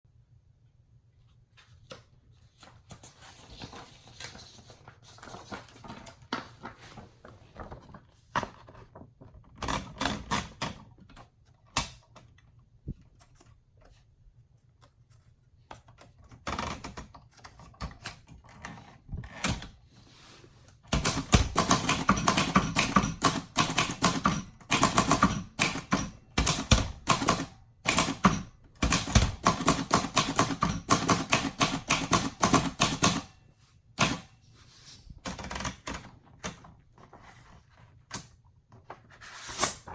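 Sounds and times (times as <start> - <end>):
typewriter typing: 15.8 - 18.8, 20.9 - 33.3, 34.0 - 34.3, 35.2 - 36.6
typewriter handling noises: 20.8 - 33.3, 34.0 - 34.4, 35.1 - 37.2.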